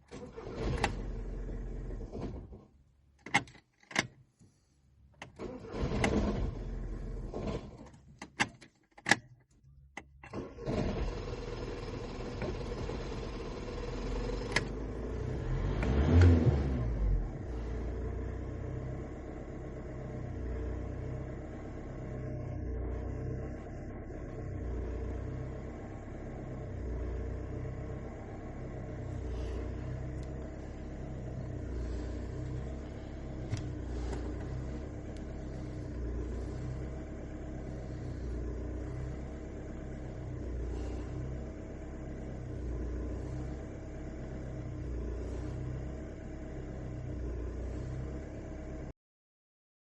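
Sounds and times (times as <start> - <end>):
diesel engine running unevenly: 10.3 - 48.4.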